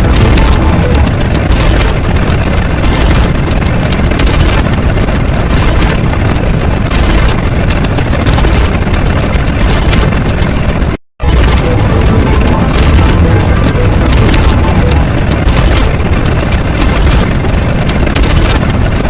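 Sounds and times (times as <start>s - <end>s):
crackle of fine clicks: 0.0s - 19.0s
heavy low rumble: 0.0s - 19.0s.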